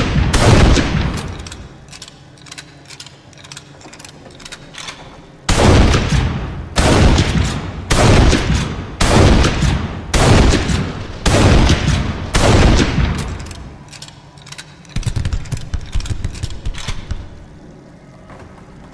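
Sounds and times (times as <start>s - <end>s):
shotgun shots booming: 0.0s - 1.5s, 5.5s - 13.7s.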